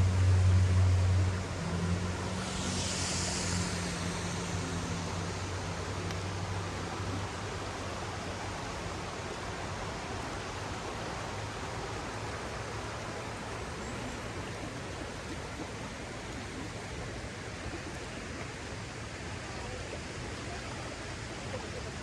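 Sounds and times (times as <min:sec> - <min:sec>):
low hum: 0:00.0 - 0:16.9
water flowing over rocks: 0:00.0 - 0:22.0.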